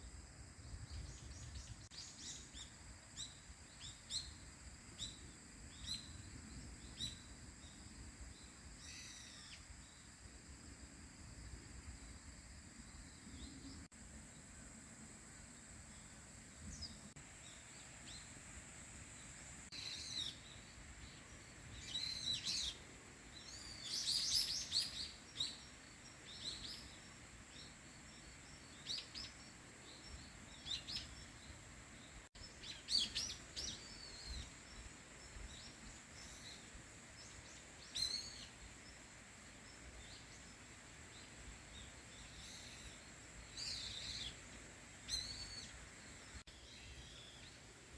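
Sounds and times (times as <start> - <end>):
small birds chirping: 19.1 - 47.8.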